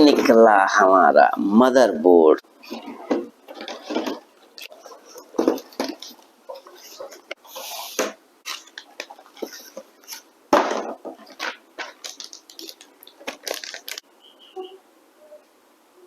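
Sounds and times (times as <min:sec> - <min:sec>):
packaging rustling and clicking: 0:02.6 - 0:07.4, 0:08.4 - 0:14.1.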